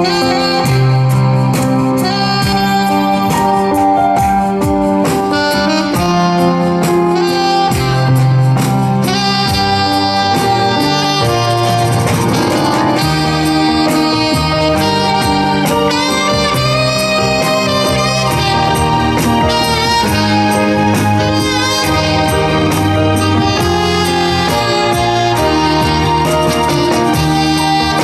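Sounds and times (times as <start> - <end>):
bass line: 0.0 - 28.0
saxophone melody: 0.0 - 28.0
steady drum beat: 0.0 - 28.0.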